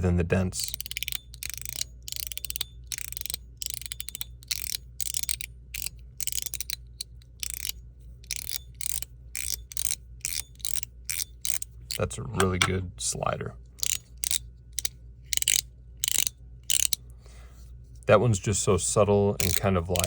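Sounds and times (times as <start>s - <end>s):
plastic fidget slider clicking: 0.6s - 12.0s, 13.8s - 17.0s, 19.4s - 20.0s.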